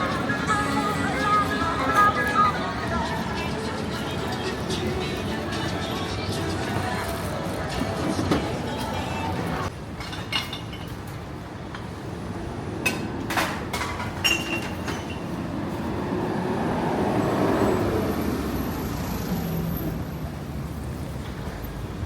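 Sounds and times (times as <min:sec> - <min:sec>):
street traffic: 0:00.0 - 0:22.0
vehicle passing: 0:15.1 - 0:21.1.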